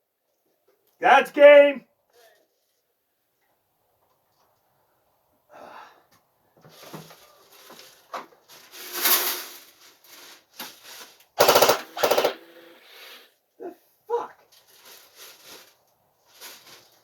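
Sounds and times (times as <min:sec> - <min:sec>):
airsoft gun full-auto burst: 0:11.4 - 0:12.5.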